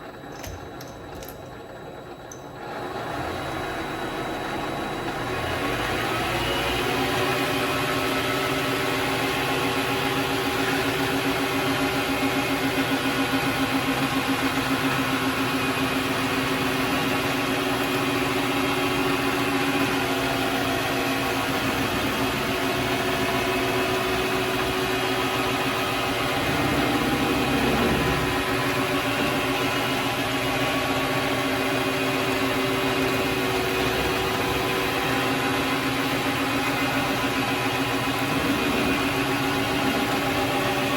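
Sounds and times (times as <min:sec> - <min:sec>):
lathe motor whining: 0:00.0 - 0:40.9
low rumble: 0:26.0 - 0:30.0.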